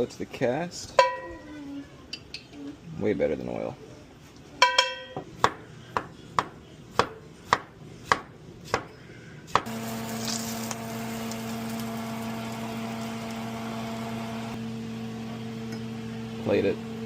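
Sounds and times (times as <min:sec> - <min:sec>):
electric hum with hiss: 0:09.7 - 0:14.6.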